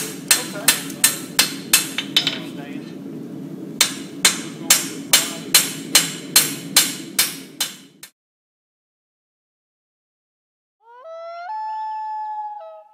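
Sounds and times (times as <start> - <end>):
hammer striking steel on anvil: 0.0 - 2.5, 3.8 - 8.1.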